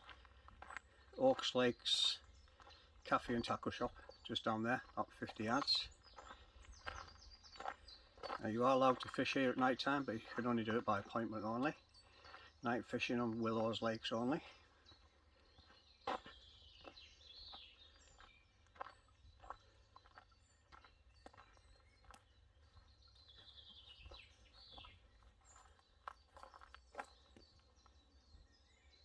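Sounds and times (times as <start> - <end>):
faint birds warbling: 0.0 - 29.0
soft footsteps: 18.2 - 28.0.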